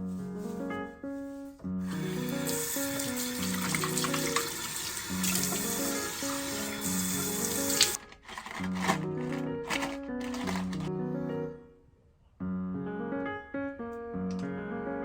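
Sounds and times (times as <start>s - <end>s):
gentle background music: 0.0s - 15.0s
tap water splashing into sink: 1.9s - 8.0s.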